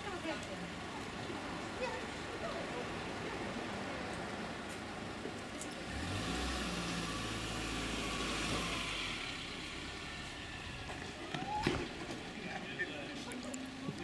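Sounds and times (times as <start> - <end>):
vehicle passing by: 5.8 - 11.1.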